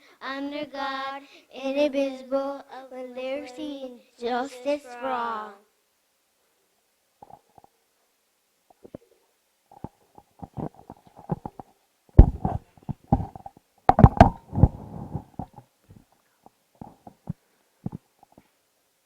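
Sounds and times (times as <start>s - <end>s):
rustling: 8.7s - 18.6s
heavy thumps and knocks: 12.2s - 15.6s.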